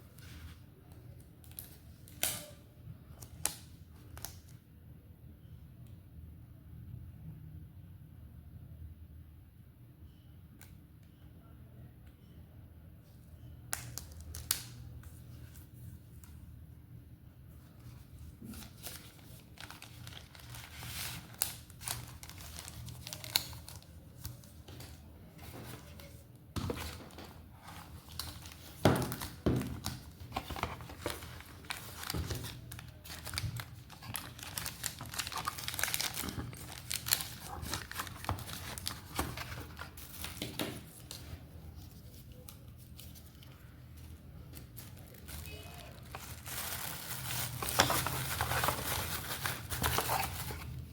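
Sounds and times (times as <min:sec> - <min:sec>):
plastic and paper crinkling: 0:17.8 - 0:50.9.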